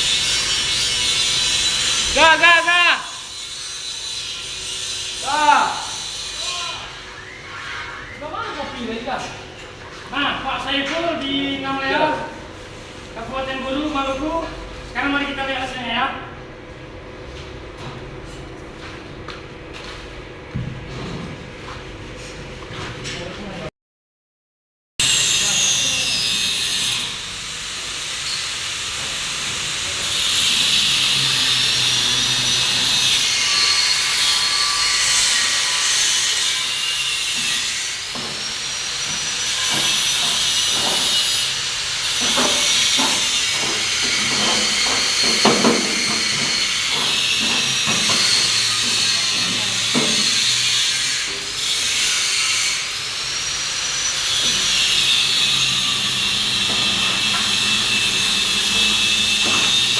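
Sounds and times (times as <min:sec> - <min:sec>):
knocks and clanks: 0:38.1 - 0:38.5, 0:39.1 - 0:41.2, 0:42.2 - 0:50.6, 0:54.4 - 0:59.9.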